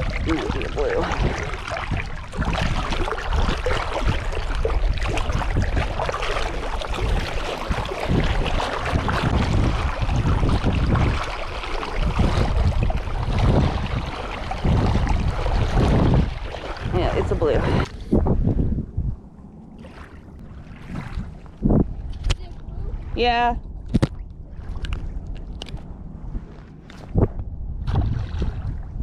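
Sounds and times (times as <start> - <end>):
rushing seawater: 0.0 - 18.1
wind buffeting microphone: 0.0 - 29.0.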